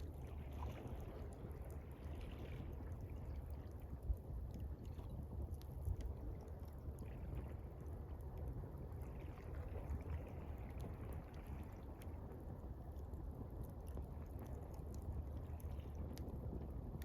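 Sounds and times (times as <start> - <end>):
campfire crackling: 0.0 - 17.0
water lapping and trickling: 0.0 - 17.0.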